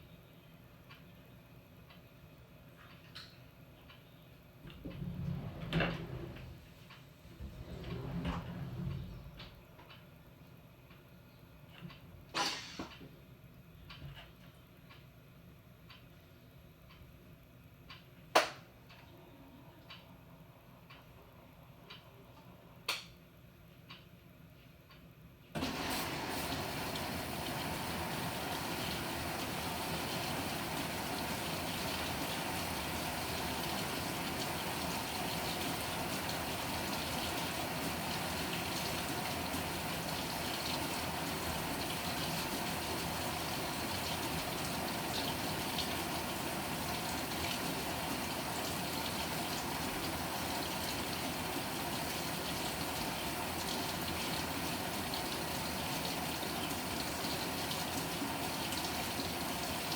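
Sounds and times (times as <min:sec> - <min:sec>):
water filling washing machine: 0:04.6 - 0:09.8, 0:12.4 - 0:13.0, 0:25.6 - 0:59.9.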